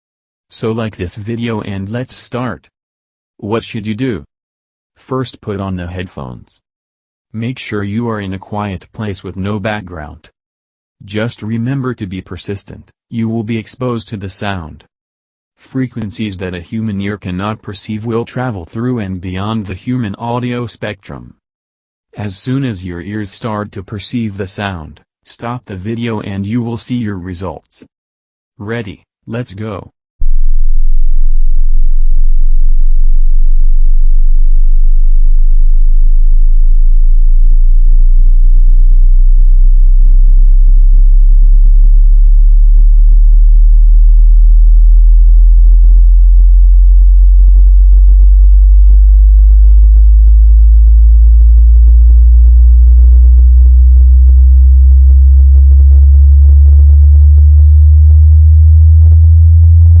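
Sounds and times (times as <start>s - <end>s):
sine tone rising in pitch: 30.2s - 60.0s.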